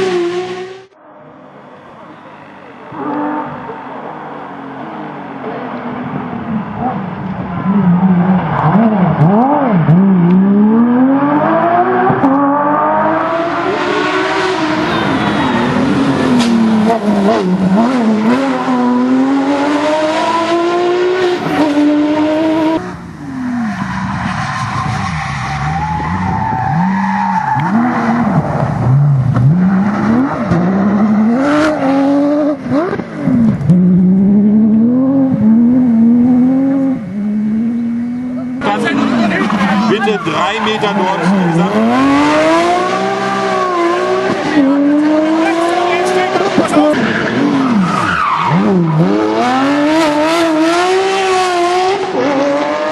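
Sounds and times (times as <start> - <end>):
rally car engine revving: 0.0 - 1.0, 2.8 - 52.9.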